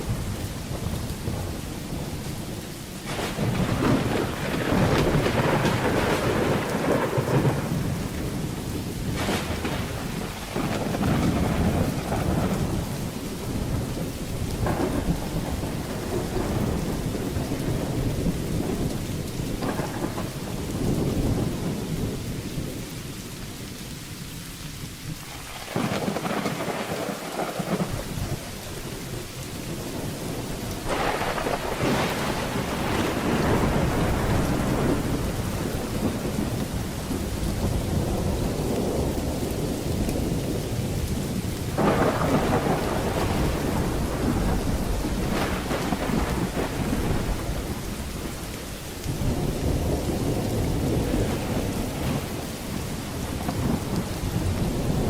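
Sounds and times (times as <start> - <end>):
thunder rolling: 0.0 - 22.8, 25.2 - 55.0
rain falling: 0.0 - 55.0
loud thunder peal: 3.0 - 21.8, 25.5 - 28.6, 29.7 - 48.5, 49.1 - 55.0.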